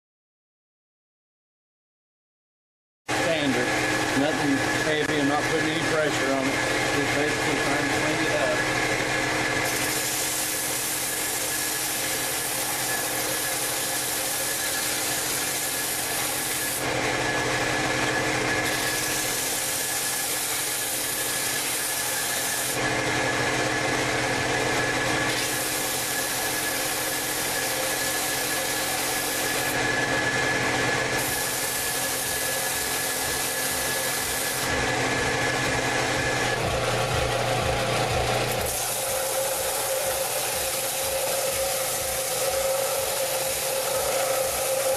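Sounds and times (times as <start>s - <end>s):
power tool motor hum: 3.4s - 44.9s
hiss of blade grinding: 9.6s - 16.8s, 18.6s - 22.8s, 25.3s - 29.8s, 31.2s - 34.8s, 38.5s - 44.9s.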